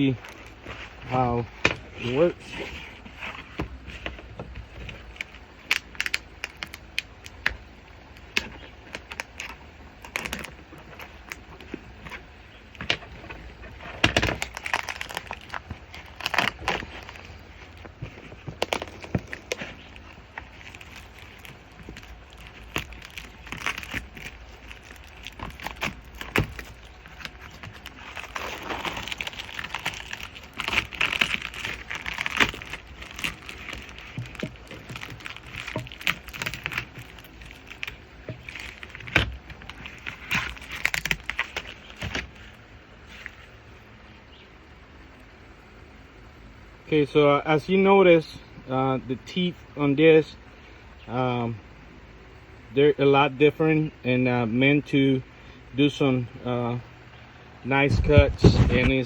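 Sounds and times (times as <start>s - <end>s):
wrapping crinkling: 0.0s - 43.8s
loud rustling: 8.2s - 43.8s.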